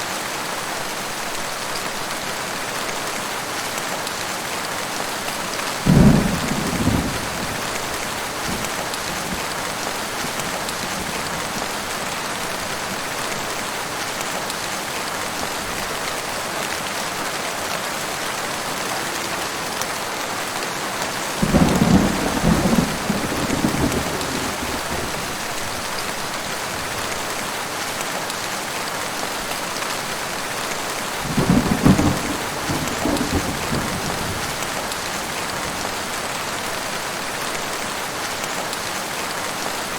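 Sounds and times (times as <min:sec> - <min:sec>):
heavy rain: 0:00.0 - 0:39.9
thunder rolls: 0:05.8 - 0:09.5, 0:21.4 - 0:25.3, 0:31.2 - 0:34.9.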